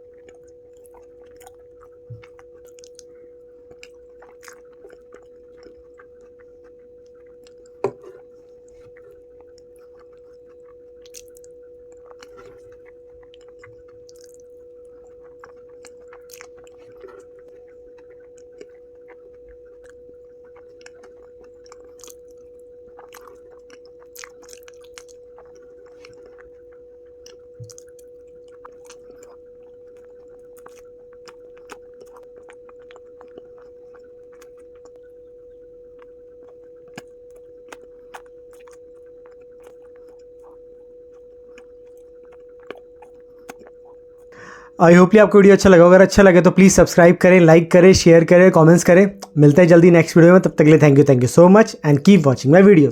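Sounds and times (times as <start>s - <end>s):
chewing food: 0.0s - 52.9s
faint steady hum: 0.0s - 52.9s
wet mouth clicks and smacks: 13.3s - 14.4s, 20.5s - 22.2s, 23.0s - 26.5s, 36.9s - 40.6s, 41.5s - 44.6s, 48.8s - 49.7s.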